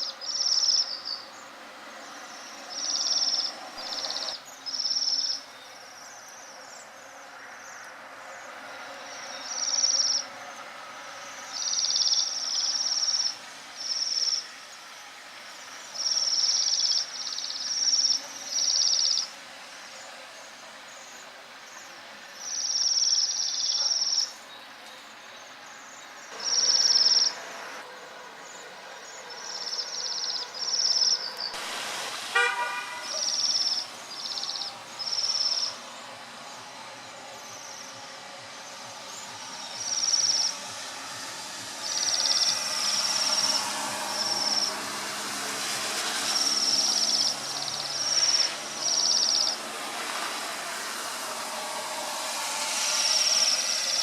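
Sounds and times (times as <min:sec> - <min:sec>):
bird high buzzy calls: 0:02.4 - 0:05.5, 0:11.4 - 0:14.5, 0:26.3 - 0:27.8, 0:32.4 - 0:35.8, 0:41.8 - 0:44.8, 0:46.2 - 0:49.6.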